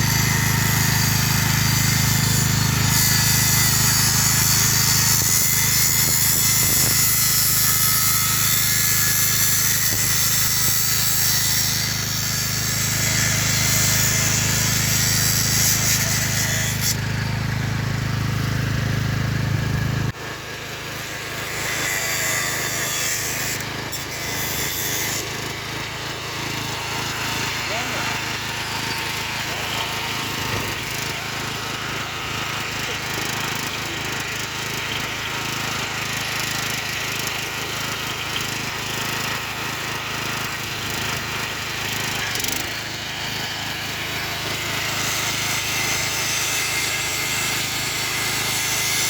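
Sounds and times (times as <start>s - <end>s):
machine motor low drone: 13.5s - 22.7s.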